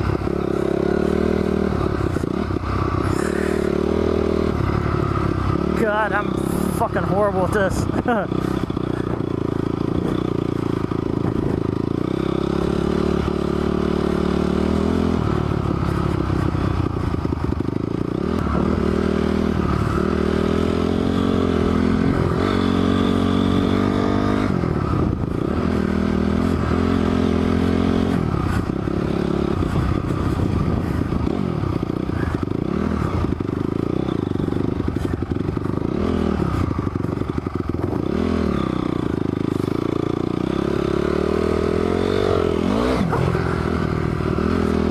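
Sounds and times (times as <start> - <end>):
dirt bike engine revving: 0.0 - 44.9.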